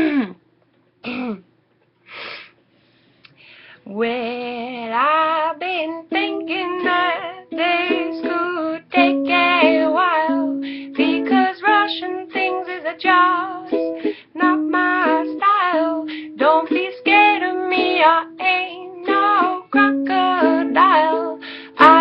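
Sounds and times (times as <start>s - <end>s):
person singing: 4.0s - 22.0s
plucked-string accompaniment: 6.1s - 22.0s.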